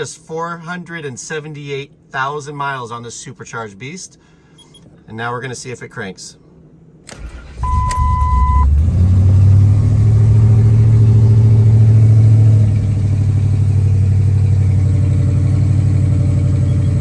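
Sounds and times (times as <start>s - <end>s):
engine cranking and idling: 7.1s - 17.0s
short beep: 7.6s - 8.7s, 16.6s - 17.0s.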